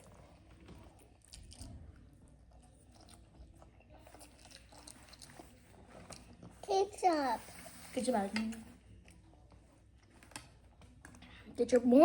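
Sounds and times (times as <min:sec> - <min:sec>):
person chewing food: 0:00.0 - 0:06.5.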